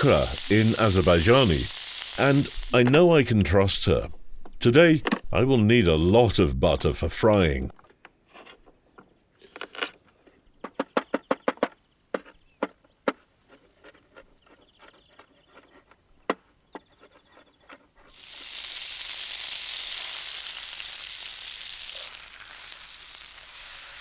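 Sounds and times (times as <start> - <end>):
butter sizzling in a hot pan: 0.0 - 2.8, 18.1 - 24.0.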